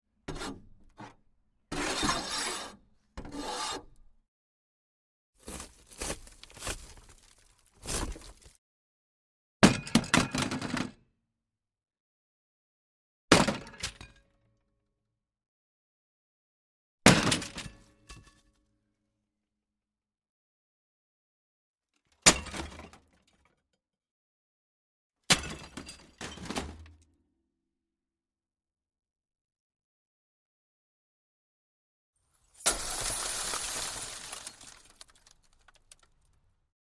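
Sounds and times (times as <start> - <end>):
metal crashing: 32.6 - 35.9
clattering metal debris: 32.6 - 36.2.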